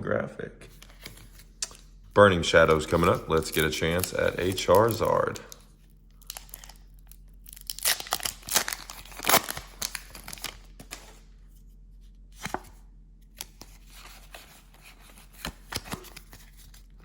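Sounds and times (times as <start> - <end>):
foil pack crinkling: 2.6 - 11.3
cards clicking and snapping: 2.9 - 6.8.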